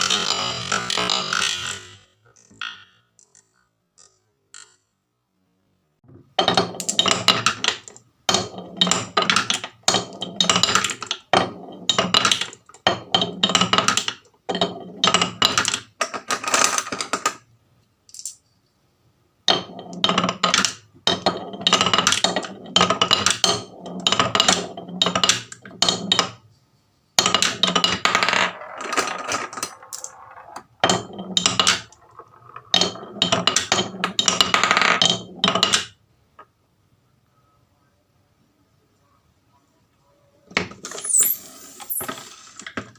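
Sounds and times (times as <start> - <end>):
marbles clattering down a marble run: 19.5 - 26.4, 27.2 - 36.0, 40.6 - 42.9.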